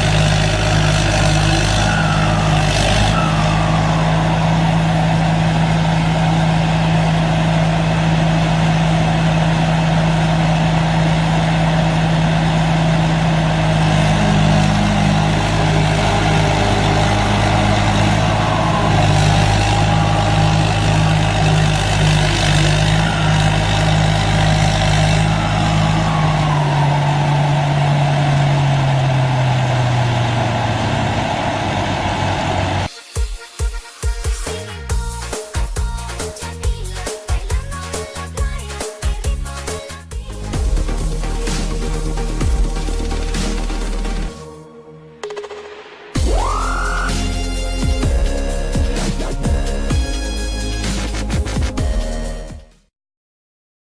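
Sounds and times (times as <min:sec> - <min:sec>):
heavy diesel engines running: 0:00.0 - 0:32.9, 0:34.4 - 0:44.8, 0:46.2 - 0:52.9.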